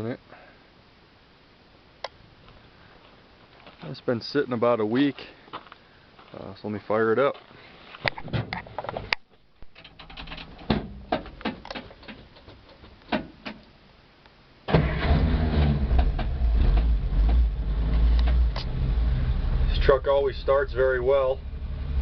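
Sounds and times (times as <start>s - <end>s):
light clicks and knocks: 8.1s - 13.7s
pickup truck engine starting: 14.7s - 20.4s.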